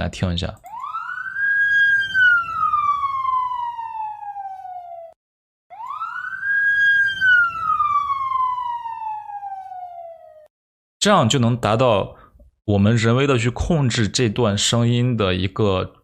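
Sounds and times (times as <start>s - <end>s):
police siren with doppler shift: 0.6s - 10.5s.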